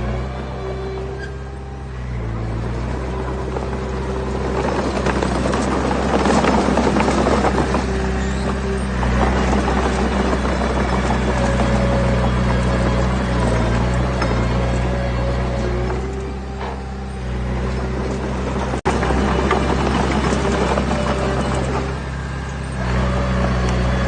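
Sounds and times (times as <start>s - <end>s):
diesel engine running: 0.0s - 24.0s
stones rattling and crunching: 3.1s - 14.8s.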